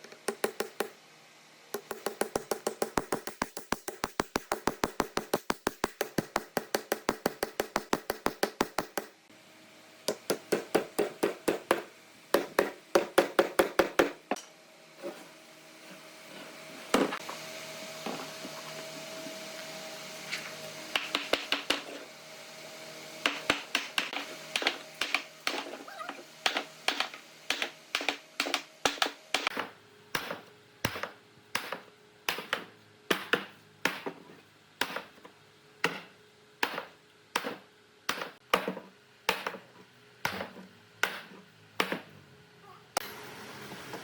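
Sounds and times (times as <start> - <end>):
steady machine hum: 0.0 - 33.9.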